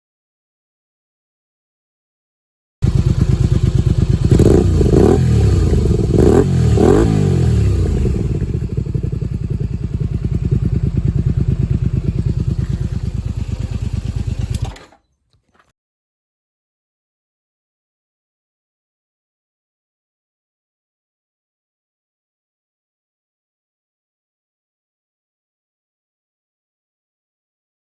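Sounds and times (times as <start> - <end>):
motorcycle engine idling and revving: 2.8 - 15.0.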